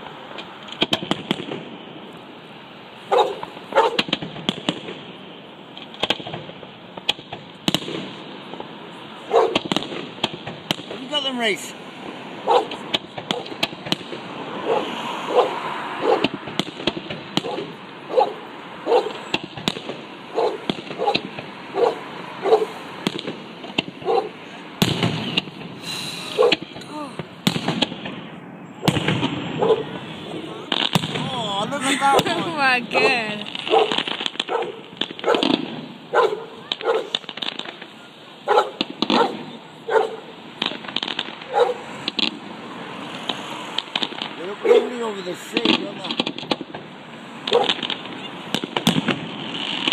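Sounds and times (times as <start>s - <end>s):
fireworks bangs and crackles: 0.0s - 49.9s
dog barking: 3.1s - 4.0s, 9.3s - 9.6s, 12.4s - 13.5s, 14.6s - 16.3s, 17.4s - 19.2s, 20.3s - 22.8s, 24.0s - 24.4s, 26.3s - 26.6s, 29.6s - 29.9s, 33.0s - 37.2s, 38.5s - 40.3s, 41.5s - 41.9s, 44.6s - 44.9s, 47.5s - 47.8s.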